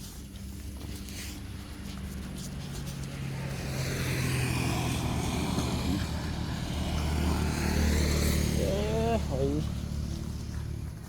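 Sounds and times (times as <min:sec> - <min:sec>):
vehicle engine running: 0:05.0 - 0:11.0.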